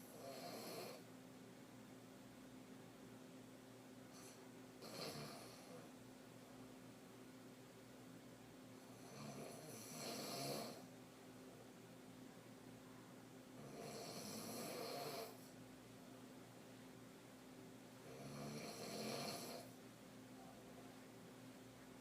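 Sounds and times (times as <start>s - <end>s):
woman snoring: 0.1s - 1.0s, 4.2s - 5.8s, 8.9s - 10.9s, 13.6s - 15.4s, 18.0s - 19.8s
quiet breathing: 4.0s - 6.1s, 12.3s - 15.7s.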